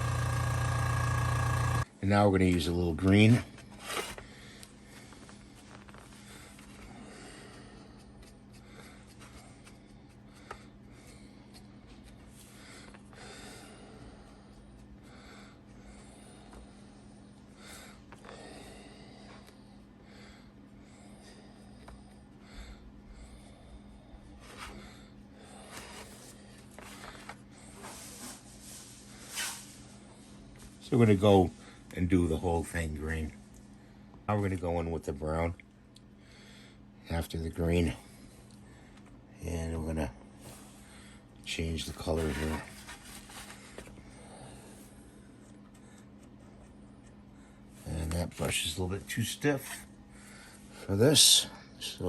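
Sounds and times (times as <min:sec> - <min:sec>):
steady low hum: 0:00.0 - 0:52.0
soft paint brushing: 0:25.6 - 0:30.8.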